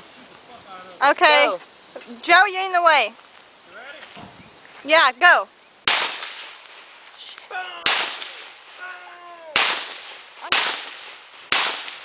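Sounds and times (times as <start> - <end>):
echoing gunshots: 5.8 - 6.9, 7.8 - 12.0.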